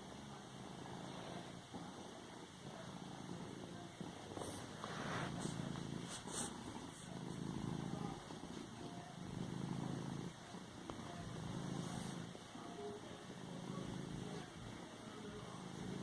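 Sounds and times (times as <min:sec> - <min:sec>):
cat purring: 0:00.0 - 0:16.0.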